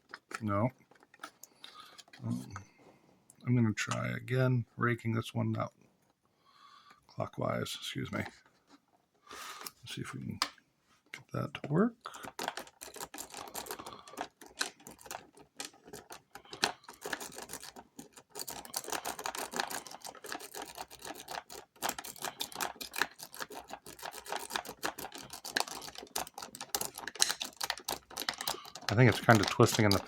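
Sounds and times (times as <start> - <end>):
lock pick clicking and scraping: 12.1 - 30.0.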